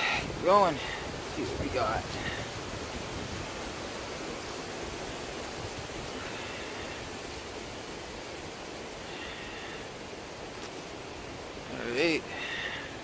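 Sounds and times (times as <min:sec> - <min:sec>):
wind rushing: 0:00.0 - 0:08.9.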